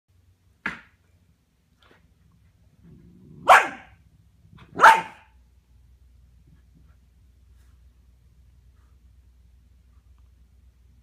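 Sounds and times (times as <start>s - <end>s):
puppy barking: 3.4s - 4.0s, 4.6s - 5.4s.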